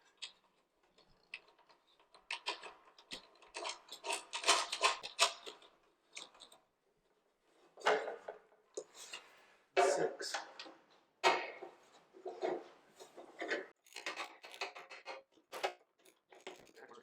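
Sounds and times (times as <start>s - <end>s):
small metal parts clicking: 13.8s - 16.9s.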